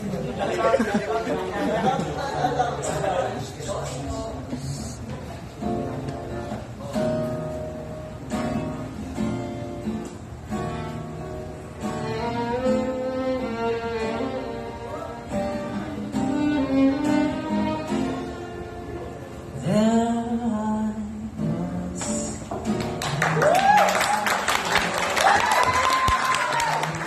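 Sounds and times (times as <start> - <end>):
acoustic guitar chords: 5.2 - 23.3.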